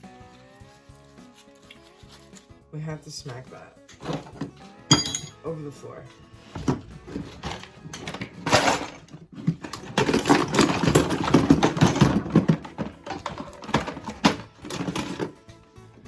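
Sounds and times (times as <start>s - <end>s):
metal housing knocking on floor: 4.1s - 5.4s.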